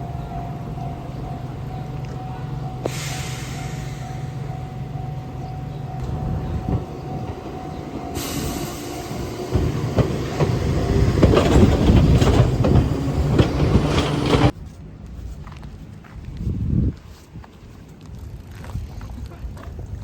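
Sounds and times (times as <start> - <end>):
train rumbling by: 0.0 - 14.6
train wheels clattering: 5.4 - 14.6.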